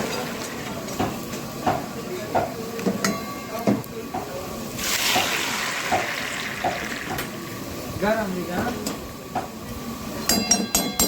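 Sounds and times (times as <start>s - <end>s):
hot oil sizzling: 0.0s - 2.1s, 4.2s - 10.3s.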